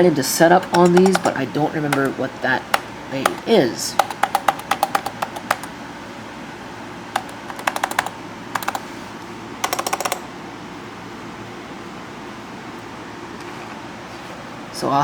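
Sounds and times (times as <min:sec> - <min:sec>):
laptop keyboard clicks: 0:00.6 - 0:02.2, 0:02.8 - 0:05.7, 0:07.2 - 0:08.9, 0:09.6 - 0:10.3.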